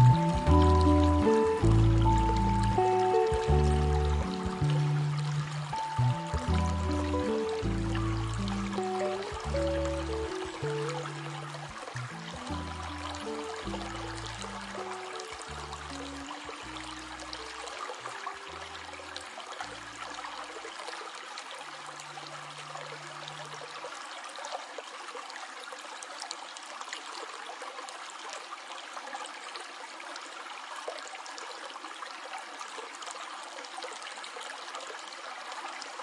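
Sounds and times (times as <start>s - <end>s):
low background music: 0.0s - 20.2s
stream flowing: 0.0s - 36.0s.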